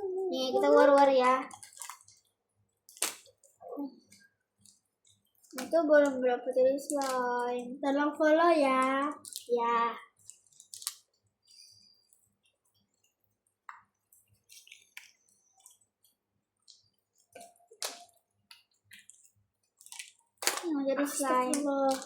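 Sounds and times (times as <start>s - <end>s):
slime squishing and clicking: 2.9s - 6.2s, 6.8s - 7.6s, 21.4s - 22.0s.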